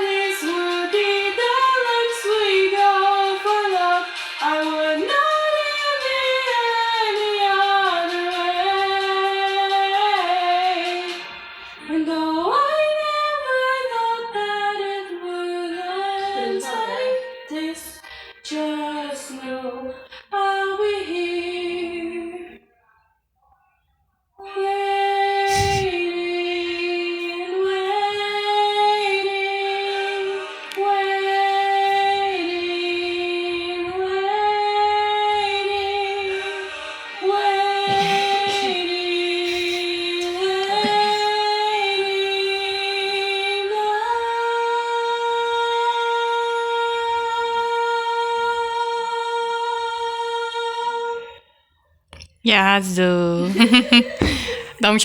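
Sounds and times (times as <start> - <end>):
woman singing wordless melody: 11.8 - 22.6, 52.5 - 55.0.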